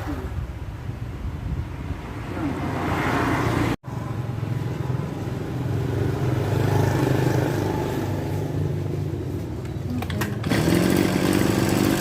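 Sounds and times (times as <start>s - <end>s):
small engine running: 10.0s - 12.0s.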